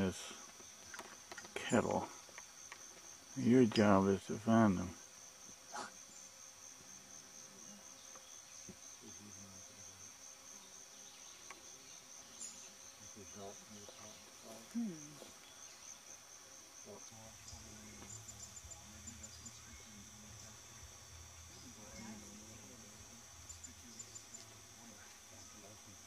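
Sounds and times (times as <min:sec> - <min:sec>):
insect chorus drone: 0:00.0 - 0:26.0
faint distant voice: 0:16.8 - 0:26.0.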